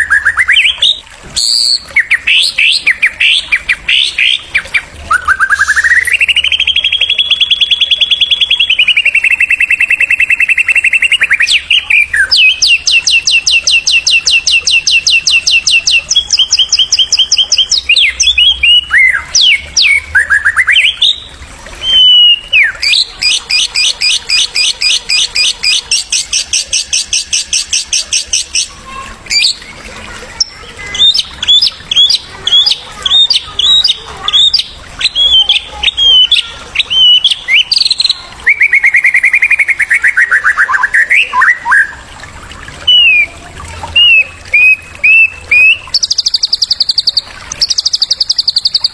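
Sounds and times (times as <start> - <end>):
songbird trilling: 5.2 - 17.0.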